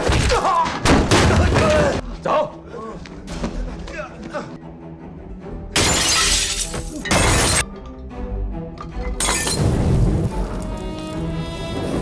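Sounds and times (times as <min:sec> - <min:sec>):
dramatic orchestral film score: 0:00.0 - 0:05.8, 0:06.6 - 0:12.0
glass shattering: 0:05.8 - 0:07.7, 0:09.2 - 0:09.9.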